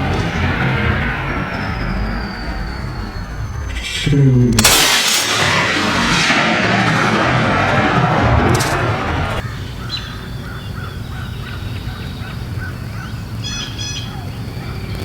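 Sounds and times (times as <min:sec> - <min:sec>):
birds chirping: 0:00.0 - 0:05.2, 0:08.9 - 0:15.0
music: 0:00.0 - 0:09.4.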